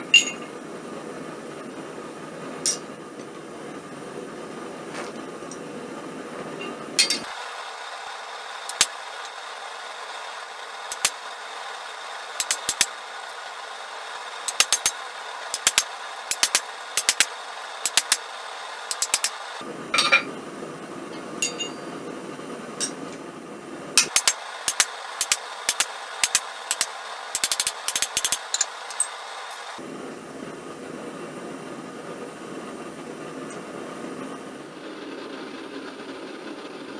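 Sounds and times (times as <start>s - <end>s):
steady hiss: 7.2s - 19.6s, 24.1s - 29.8s.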